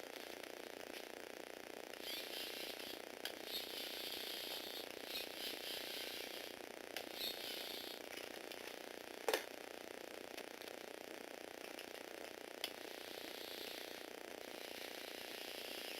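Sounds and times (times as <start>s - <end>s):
small electric motor whirring: 2.0s - 8.1s, 12.7s - 15.9s.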